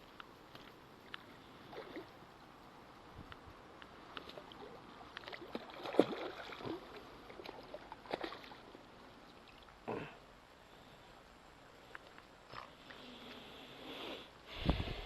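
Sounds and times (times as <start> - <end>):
water splashing and sloshing: 0.5 - 3.0, 3.7 - 9.9.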